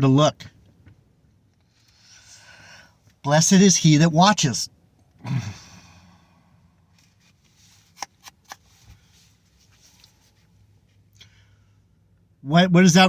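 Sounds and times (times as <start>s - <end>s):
man breathing out: 5.2s - 6.6s.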